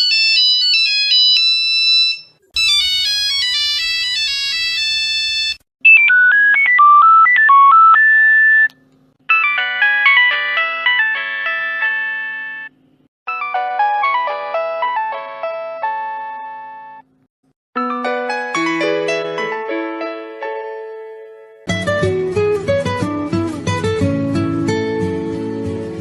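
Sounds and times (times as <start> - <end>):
phone ringtone melodies: 0.0 - 8.7, 9.3 - 17.0, 17.8 - 20.3.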